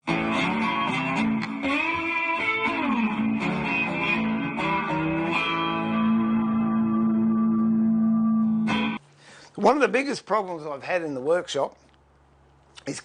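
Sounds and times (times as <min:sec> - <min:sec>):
electric guitar music: 0:00.0 - 0:09.0.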